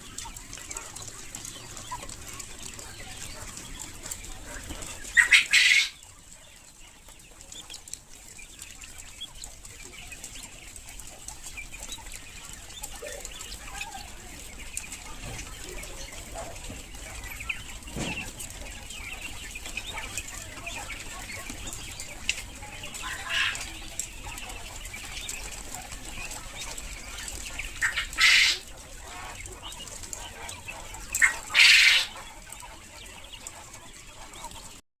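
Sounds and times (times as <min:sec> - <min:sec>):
quails rustling and clicking: 0:00.0 - 0:34.8
wings flapping: 0:07.5 - 0:34.8.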